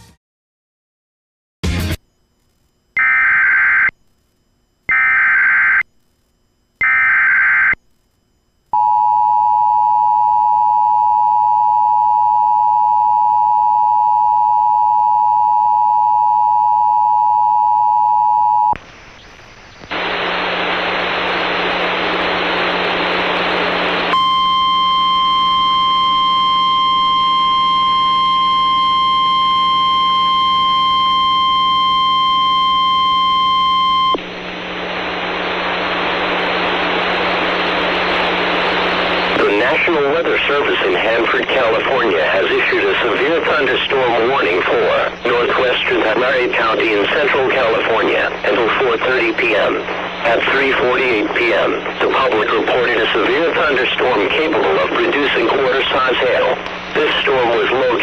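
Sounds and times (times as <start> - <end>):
radio hiss: 18.8 - 32.2, 34.1 - 58.0.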